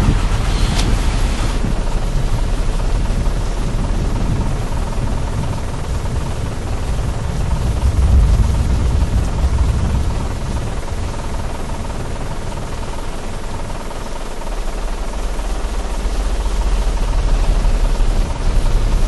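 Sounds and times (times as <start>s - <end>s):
storm wind rushing: 0.0s - 13.0s
deep rumbling: 0.0s - 19.0s
low buzzing drone: 0.0s - 19.0s.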